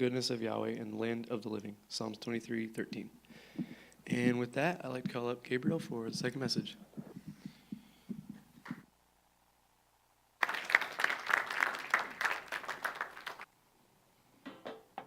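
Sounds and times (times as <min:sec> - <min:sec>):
congregation applauding: 0:10.4 - 0:13.5.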